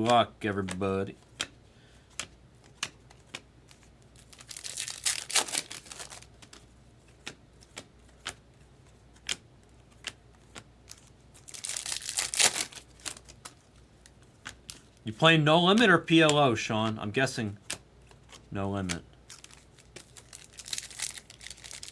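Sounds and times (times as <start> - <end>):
cards being handled clicks: 0.0 - 15.0, 15.6 - 21.9
wrapper tearing and crinkling: 4.2 - 6.3, 10.9 - 13.6, 19.3 - 21.9.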